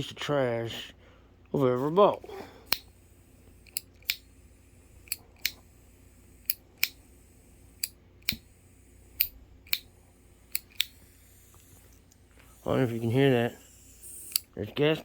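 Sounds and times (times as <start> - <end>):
lighter igniter clicking: 2.7 - 2.9, 3.6 - 4.4, 5.0 - 5.7, 6.3 - 7.1, 7.7 - 11.8, 14.0 - 14.5.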